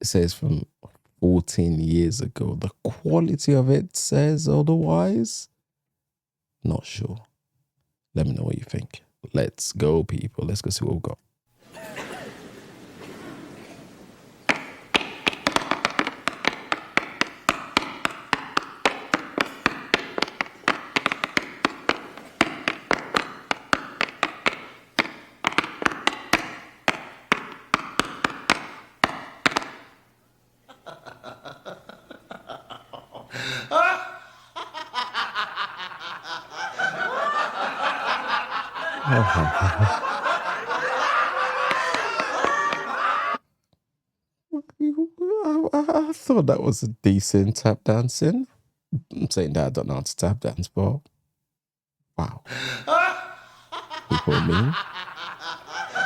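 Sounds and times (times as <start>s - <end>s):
audience laughing: 11.6s - 17.4s, 30.7s - 43.4s, 52.6s - 56.0s
tap shoes on hard floor: 14.4s - 30.0s, 40.7s - 43.2s.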